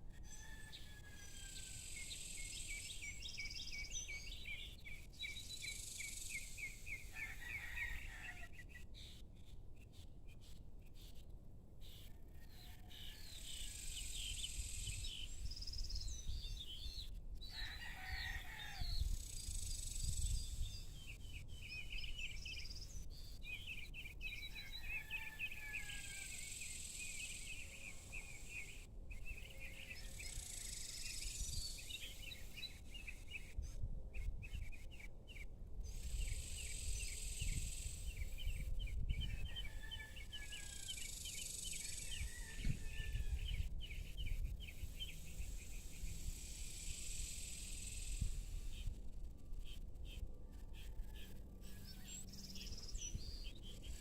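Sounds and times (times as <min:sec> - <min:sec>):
small birds chirping: 0:35.9 - 0:49.0.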